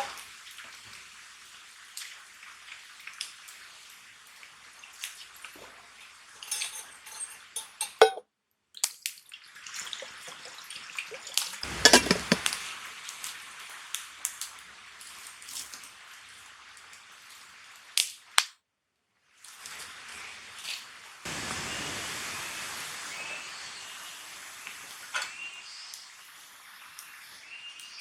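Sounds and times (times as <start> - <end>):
rain hissing: 0.0 - 1.7, 11.6 - 17.9, 19.5 - 28.0
cookware and utensils clattering: 5.6 - 8.2, 11.6 - 12.7.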